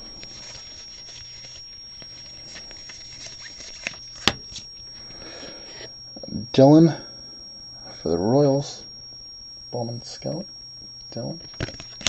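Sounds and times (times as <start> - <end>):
cards rustling with soft ticks: 0.2 - 4.8.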